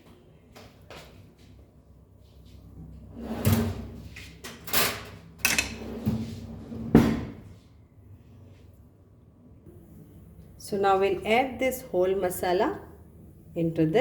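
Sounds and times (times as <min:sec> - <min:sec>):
cookware and utensils clunking: 0:05.4 - 0:05.8.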